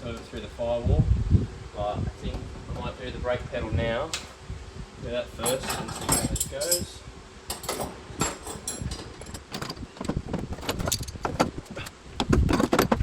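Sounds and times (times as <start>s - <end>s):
metallic clinks of hand tools: 5.4s - 9.8s
heavy thumps: 8.2s - 13.0s.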